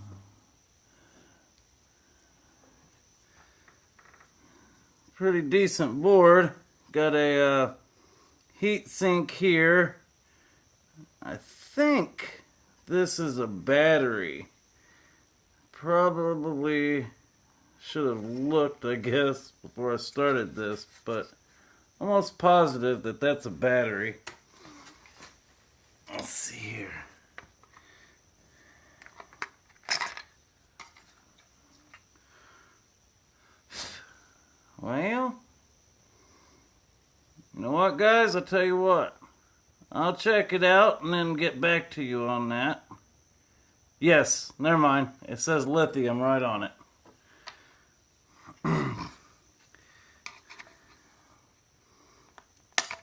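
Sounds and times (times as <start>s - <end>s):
electronic scrap parts clinking: 52.7s - 53.0s.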